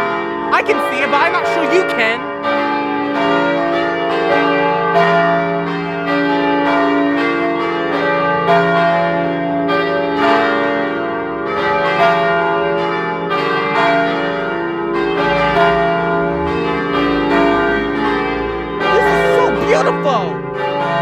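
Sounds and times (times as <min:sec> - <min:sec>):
church bells ringing: 0:02.4 - 0:10.8.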